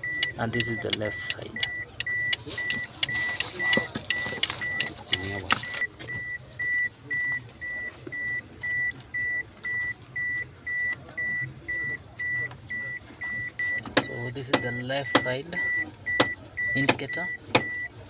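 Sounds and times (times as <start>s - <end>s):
hazard indicator beeping: 0.0s - 18.0s
clicks and rustling of wires: 0.6s - 6.3s.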